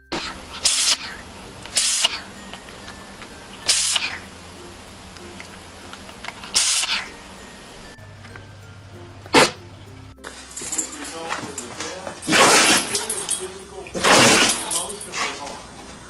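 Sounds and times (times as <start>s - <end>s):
pet sneezing: 0.1s - 2.4s, 3.6s - 4.3s, 6.4s - 7.1s, 9.3s - 9.6s, 12.2s - 13.3s, 14.0s - 15.4s.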